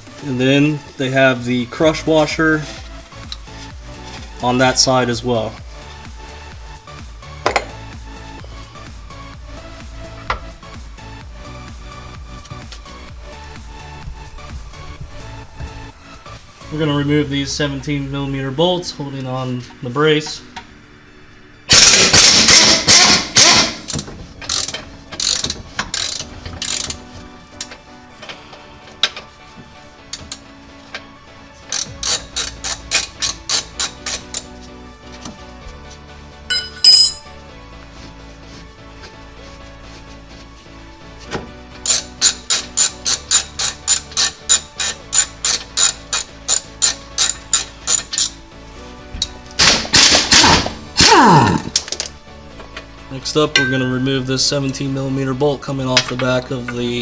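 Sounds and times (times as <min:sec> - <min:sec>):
ratchet wrench clicking: 0:21.7 - 0:27.0, 0:30.1 - 0:30.4, 0:31.7 - 0:34.5, 0:41.8 - 0:48.4.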